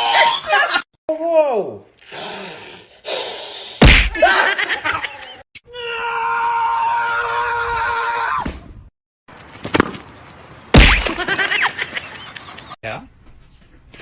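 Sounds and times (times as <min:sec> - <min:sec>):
sharp thud: 0:03.8 - 0:04.2, 0:10.8 - 0:11.2
scream-like cry: 0:05.7 - 0:08.4.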